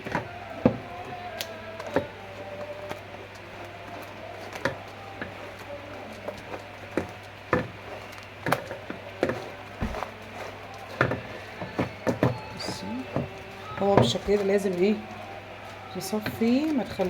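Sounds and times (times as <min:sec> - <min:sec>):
dull thump: 0:09.8 - 0:10.1.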